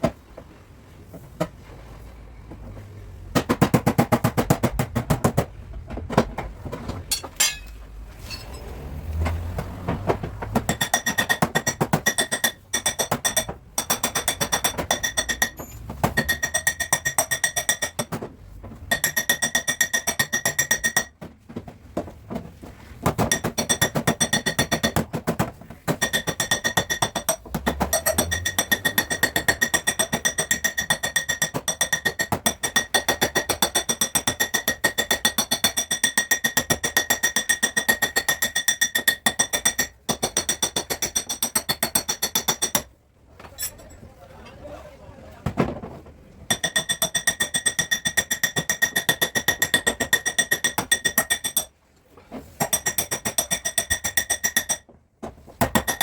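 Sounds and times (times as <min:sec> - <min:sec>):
hammer tapping on sheet metal: 0:03.3 - 0:06.4, 0:09.6 - 0:21.4, 0:23.0 - 0:42.9, 0:46.5 - 0:51.7, 0:52.5 - 0:54.9, 0:55.6 - 0:56.0.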